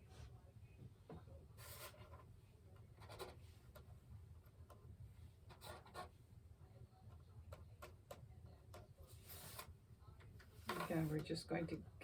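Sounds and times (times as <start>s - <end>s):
scratchy rustles of crochet work: 9.0s - 9.8s, 10.5s - 11.4s.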